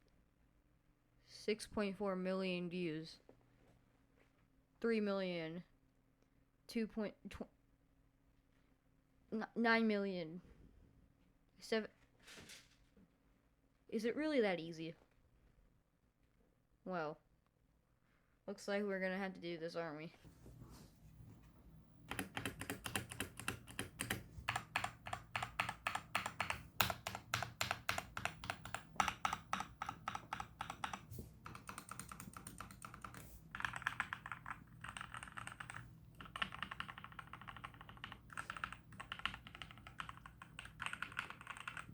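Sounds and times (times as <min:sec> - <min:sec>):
faint steady hum: 0:13.2 - 0:41.9
keyboard typing: 0:22.0 - 0:41.9.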